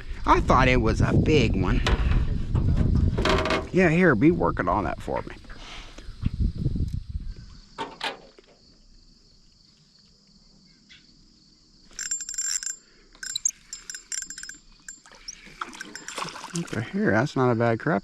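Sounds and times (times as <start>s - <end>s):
crickets chirping: 0.0s - 18.0s
handling rustling and clicking: 11.9s - 16.2s.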